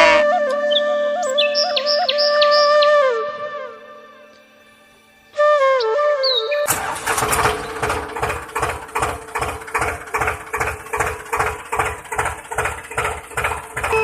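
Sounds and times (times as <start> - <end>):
hand tool working wood: 8.1 - 14.0.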